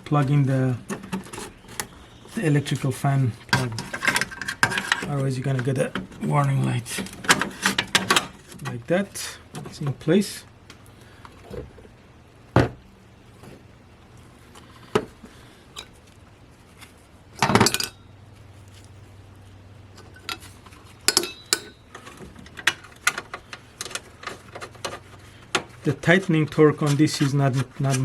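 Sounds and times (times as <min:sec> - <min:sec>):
metal tools clinking: 0:17.4 - 0:18.1, 0:20.0 - 0:23.2
metal rattle: 0:20.0 - 0:25.0.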